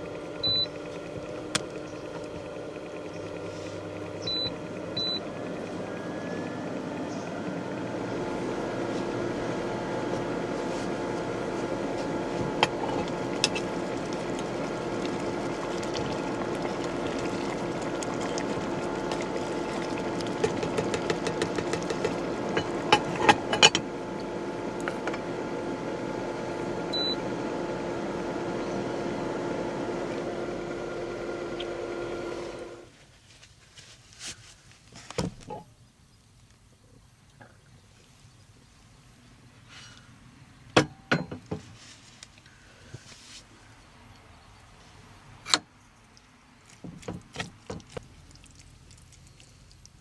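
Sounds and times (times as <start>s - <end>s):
small motor humming: 0.0s - 32.9s.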